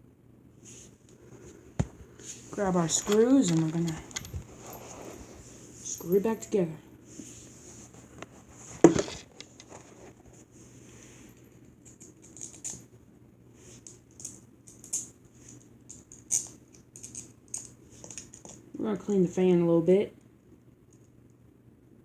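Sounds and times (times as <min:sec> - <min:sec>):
metal parts clacking: 0:02.5 - 0:04.9, 0:15.9 - 0:18.5.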